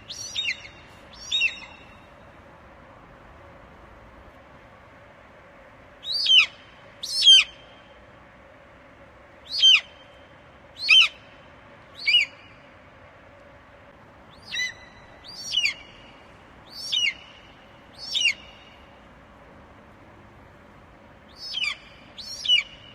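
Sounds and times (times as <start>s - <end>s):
eagle calling: 0.0s - 2.0s, 6.0s - 7.6s, 10.8s - 11.2s, 12.0s - 12.4s, 14.3s - 16.1s, 16.7s - 17.4s, 18.0s - 18.7s, 21.4s - 22.9s
faint steady hiss: 0.0s - 22.9s.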